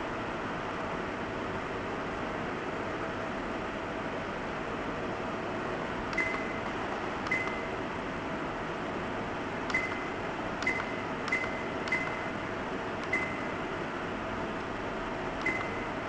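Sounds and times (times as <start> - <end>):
button clicks with high beeps: 6.1 - 7.8, 9.7 - 12.4, 13.0 - 13.6, 15.4 - 16.0.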